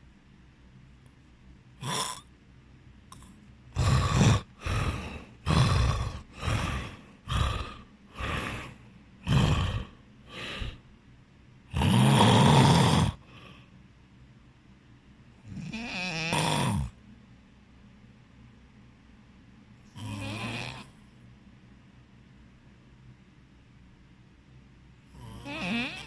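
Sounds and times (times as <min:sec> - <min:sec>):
person snoring heavily: 0:01.8 - 0:02.3, 0:03.2 - 0:10.8, 0:11.7 - 0:13.6, 0:15.4 - 0:17.0, 0:20.0 - 0:20.9, 0:25.1 - 0:26.0.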